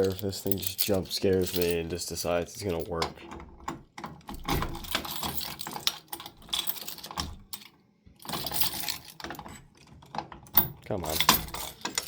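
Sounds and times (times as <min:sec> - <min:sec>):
keys clicking and rattling: 0:00.0 - 0:12.0.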